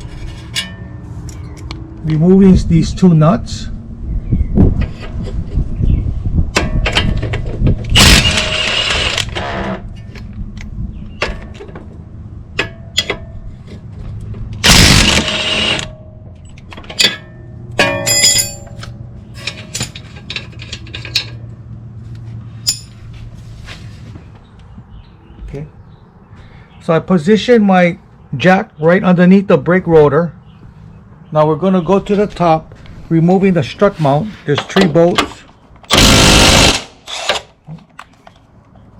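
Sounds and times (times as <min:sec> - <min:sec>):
impact wrench running: 0:08.0 - 0:09.8, 0:14.6 - 0:15.9, 0:35.9 - 0:37.4
metallic clinks of tools: 0:17.8 - 0:21.4, 0:22.6 - 0:23.0.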